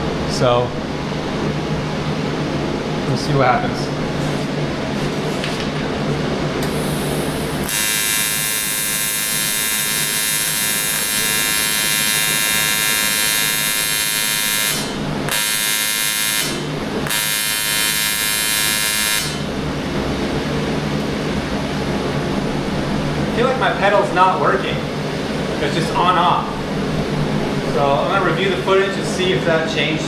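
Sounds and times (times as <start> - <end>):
welding arc buzzing: 6.6 - 19.9.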